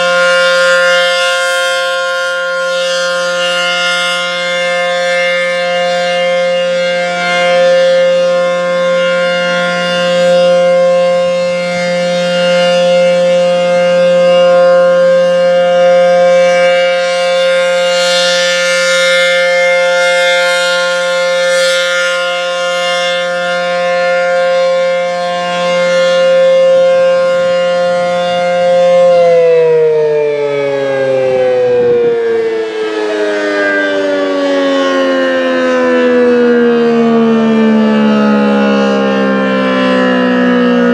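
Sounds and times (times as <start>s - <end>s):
rotating warning siren: 0.0s - 40.9s.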